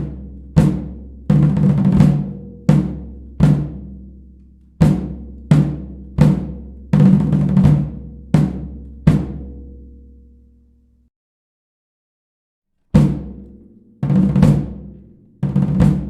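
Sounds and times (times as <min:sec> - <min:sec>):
snare and bass drum hits: 0:00.0 - 0:03.9, 0:04.8 - 0:09.6, 0:13.0 - 0:13.4, 0:14.0 - 0:16.0.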